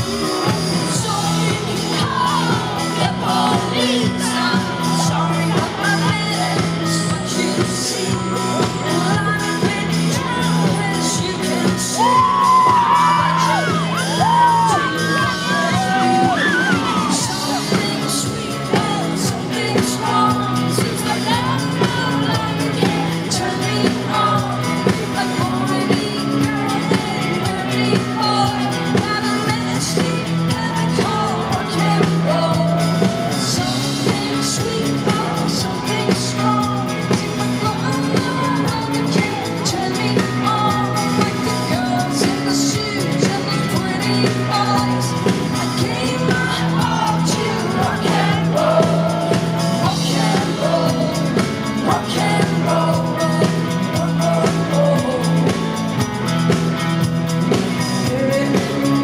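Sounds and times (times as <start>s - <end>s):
live rock band playing: 0.0s - 59.0s
woman singing lead vocal: 0.0s - 59.0s
people shouting and whooping: 0.5s - 22.7s, 27.6s - 35.4s.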